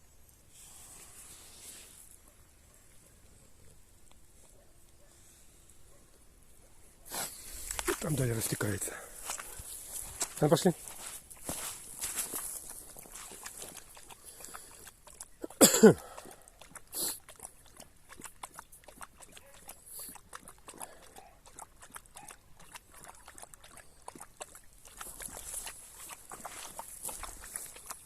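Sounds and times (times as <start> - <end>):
footsteps on wet ground: 7.1 - 17.2, 22.9 - 28.0
dog barking: 19.4 - 19.7, 22.2 - 22.4.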